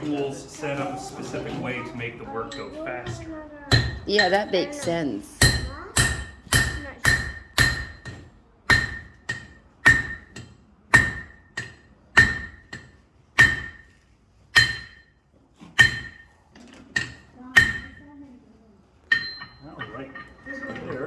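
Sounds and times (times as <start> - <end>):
hammer striking iron on anvil: 3.7 - 4.3, 5.4 - 15.1, 15.8 - 16.3, 17.0 - 18.0, 19.1 - 20.0.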